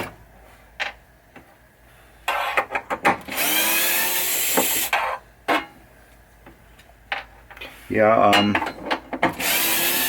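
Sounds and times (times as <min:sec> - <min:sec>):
electric screwdriver motor whine: 0:03.3 - 0:04.9, 0:09.4 - 0:10.0.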